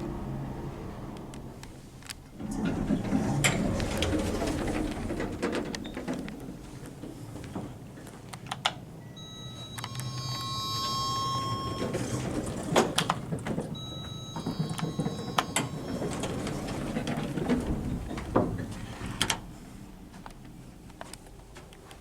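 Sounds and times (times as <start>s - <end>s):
lift doors sliding: 0.0s - 7.9s, 9.2s - 19.9s
lift arrival chime: 9.0s - 18.4s
door gear knocks and clicks: 11.8s - 19.4s.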